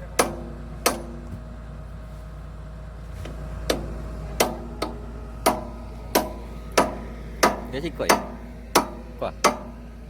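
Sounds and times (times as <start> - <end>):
hammer striking steel: 0.0 - 1.3, 3.7 - 10.0.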